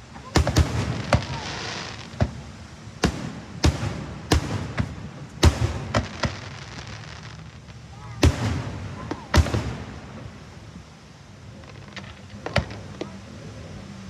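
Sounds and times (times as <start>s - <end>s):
fireworks bangs: 0.0s - 13.2s.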